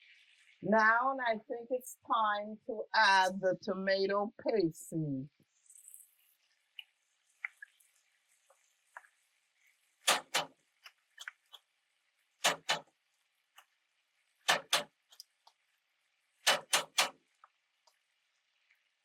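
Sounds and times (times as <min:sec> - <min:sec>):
utensil rapping against pan edge: 0:10.1 - 0:10.5, 0:12.4 - 0:12.8, 0:14.5 - 0:14.9, 0:16.5 - 0:17.2.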